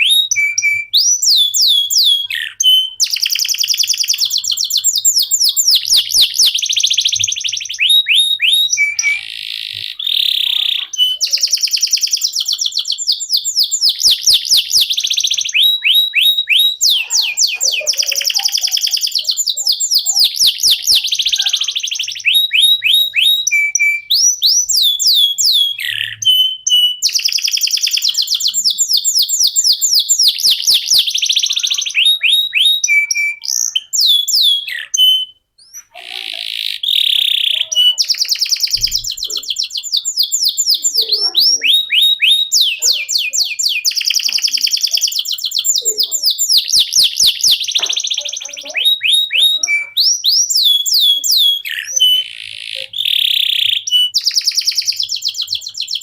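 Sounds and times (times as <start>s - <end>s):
canary singing: 0.0s - 56.0s.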